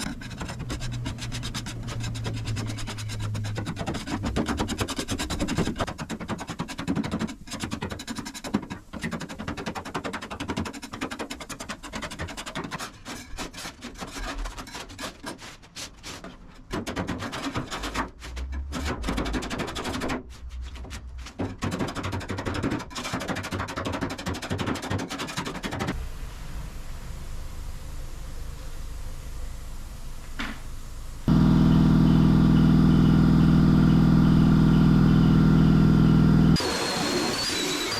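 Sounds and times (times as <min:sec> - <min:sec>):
hand rasping on bodywork: 0:00.0 - 0:26.0.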